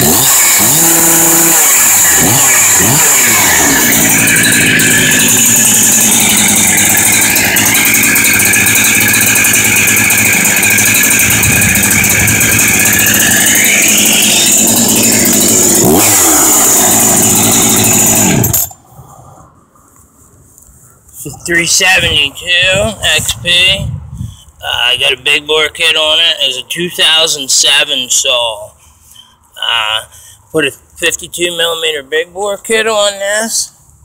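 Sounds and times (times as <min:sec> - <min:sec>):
chainsaw running at high revs: 0:00.0 - 0:18.7.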